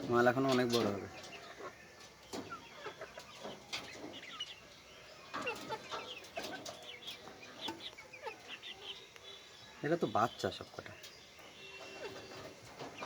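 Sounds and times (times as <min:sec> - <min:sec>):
young chickens clucking and peeping: 0:00.0 - 0:13.0.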